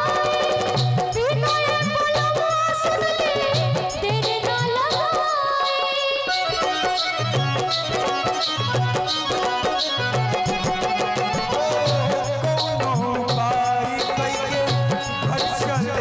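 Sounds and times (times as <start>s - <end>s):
steady drum beat: 0.0s - 16.0s
instrumental folk melody: 5.7s - 16.0s.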